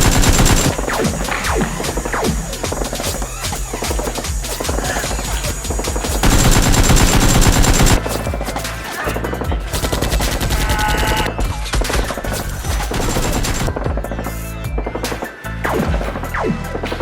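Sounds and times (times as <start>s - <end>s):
machine-gun fire: 0.0s - 2.8s, 6.1s - 8.0s, 12.9s - 13.7s.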